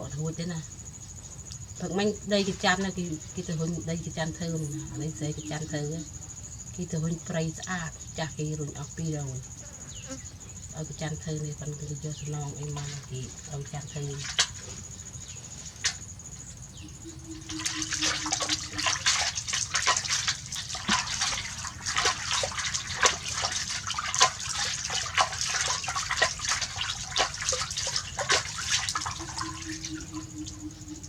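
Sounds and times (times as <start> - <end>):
bath water splashing: 14.1 - 14.7, 17.1 - 31.0.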